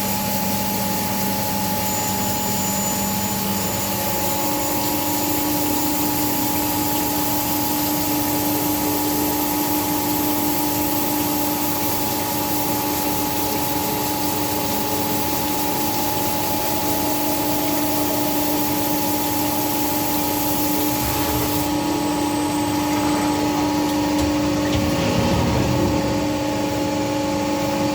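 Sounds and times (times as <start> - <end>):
grinding machine hum: 15.3 - 27.9.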